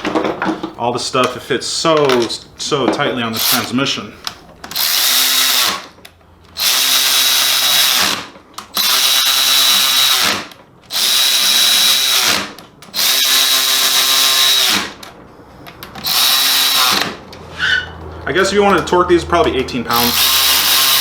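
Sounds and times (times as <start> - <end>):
power drill whining: 4.7 - 6.0, 6.6 - 15.1, 16.0 - 17.8, 19.9 - 21.0.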